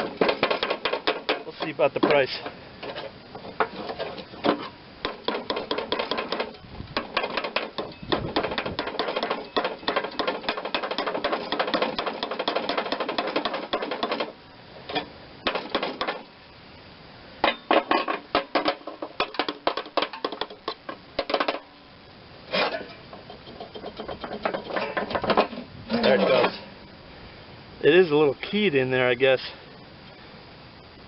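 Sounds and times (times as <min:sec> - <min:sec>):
tool clicking and rattling metallically: 0:00.0 - 0:16.3, 0:17.4 - 0:21.7, 0:22.6 - 0:26.7.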